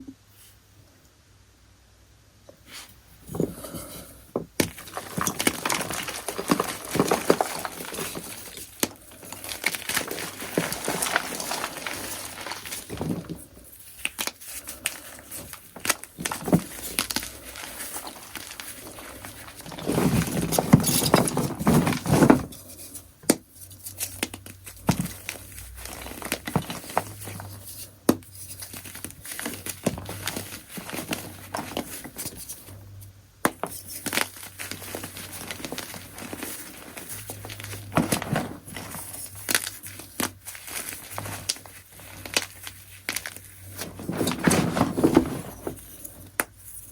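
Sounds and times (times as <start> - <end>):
chalk crunching: 4.7 - 20.7.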